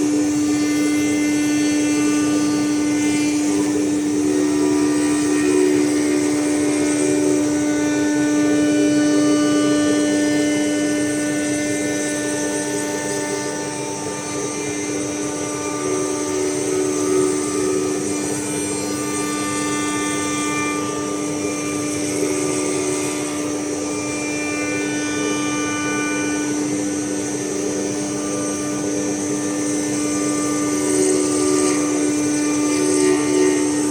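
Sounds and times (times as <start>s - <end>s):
bit carving wood: 0.0s - 13.4s, 26.4s - 33.9s
router spindle whining: 0.0s - 33.9s.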